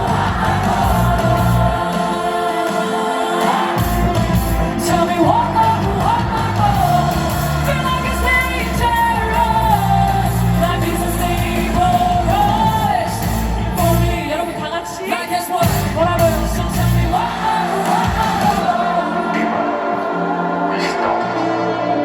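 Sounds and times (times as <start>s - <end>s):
live pop song over speakers: 0.0s - 22.0s
person singing: 0.0s - 22.0s.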